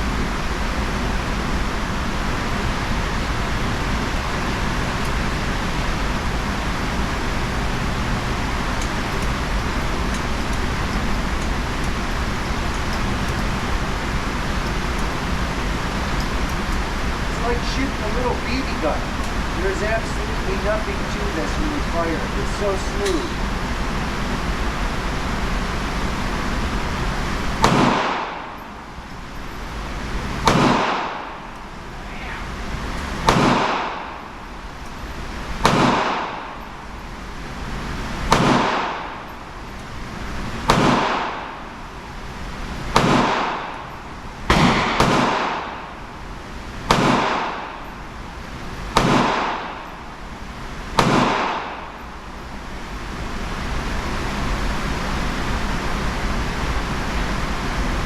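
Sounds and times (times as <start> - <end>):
revolver shots with echo: 27.6 - 28.7, 30.4 - 31.5, 33.2 - 34.3, 35.6 - 36.5, 38.3 - 39.2, 40.7 - 41.6, 42.9 - 43.9, 44.5 - 46.2, 46.8 - 48.2, 48.9 - 50.1, 50.9 - 52.1.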